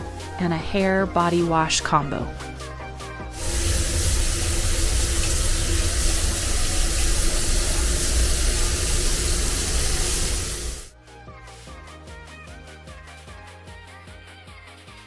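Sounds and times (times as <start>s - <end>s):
water running from tap: 3.4s - 11.0s.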